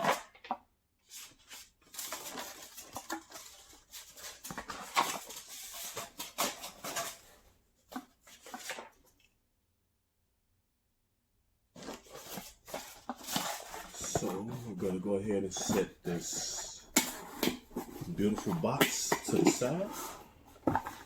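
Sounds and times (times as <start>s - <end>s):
plastic wrappers crinkling: 1.4s - 7.2s, 11.8s - 21.0s.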